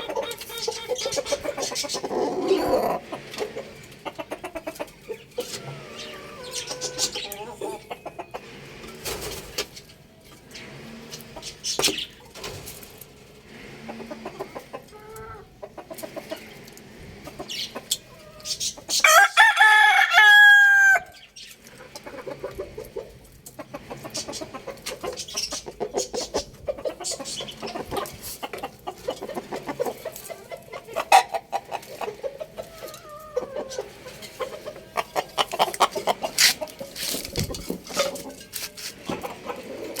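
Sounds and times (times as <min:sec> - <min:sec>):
chicken clucking: 0:00.0 - 0:40.0
rooster crowing: 0:19.0 - 0:21.2.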